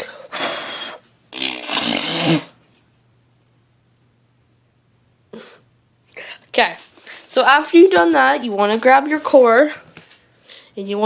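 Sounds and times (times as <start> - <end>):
person blowing hard: 0.0 - 2.6.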